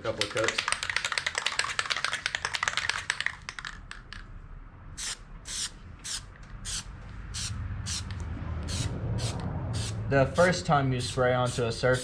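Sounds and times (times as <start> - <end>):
aerosol can spraying in hissing bursts: 5.0 - 8.1, 8.7 - 12.0.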